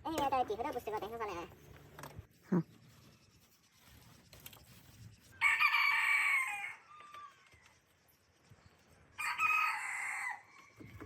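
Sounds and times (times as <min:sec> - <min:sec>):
rooster crowing: 0:05.4 - 0:07.5, 0:09.2 - 0:10.8.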